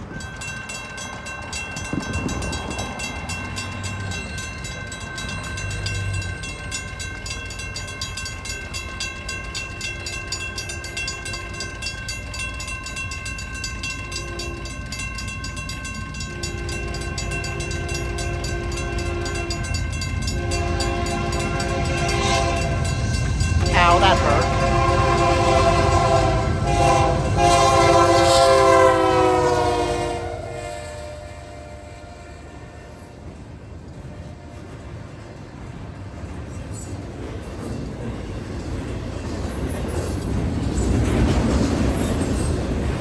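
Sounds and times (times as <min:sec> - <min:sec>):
crossing bell ringing: 0:00.0 - 0:43.0
train rumble: 0:00.0 - 0:43.0
locomotive air horn blasts: 0:20.4 - 0:22.9, 0:23.6 - 0:33.0.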